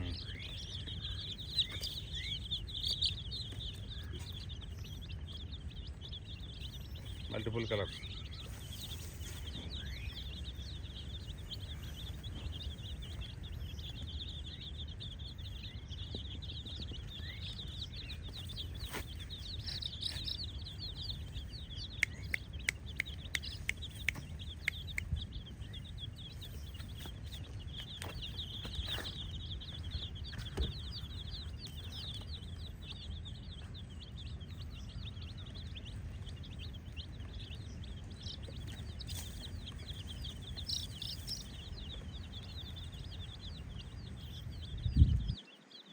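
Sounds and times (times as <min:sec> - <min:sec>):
baby chicks peeping: 0:00.0 - 0:45.9
sharp clicks: 0:21.9 - 0:25.3.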